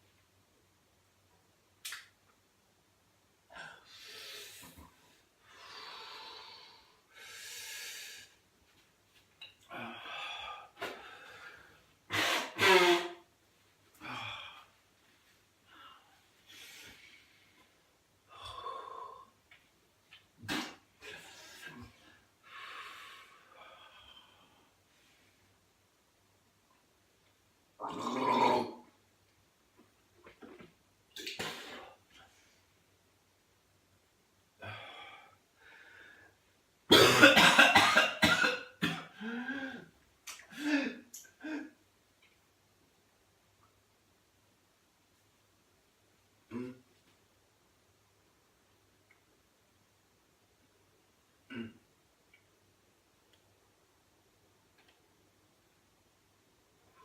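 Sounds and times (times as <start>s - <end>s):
person coughing harshly: 36.9s - 39.2s.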